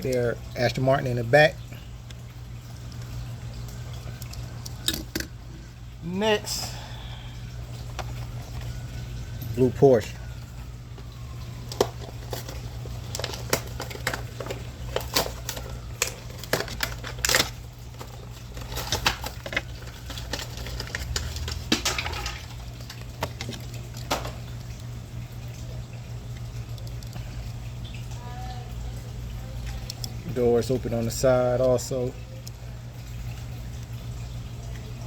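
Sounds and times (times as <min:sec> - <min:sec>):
steady low hum: 0:00.0 - 0:35.0
packaging clicks and crackles: 0:11.6 - 0:24.9.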